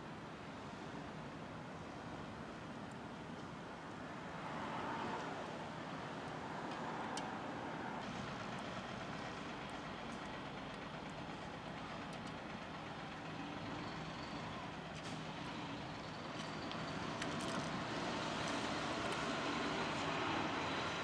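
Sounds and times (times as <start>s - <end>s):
outdoor background noise: 0.0s - 21.0s.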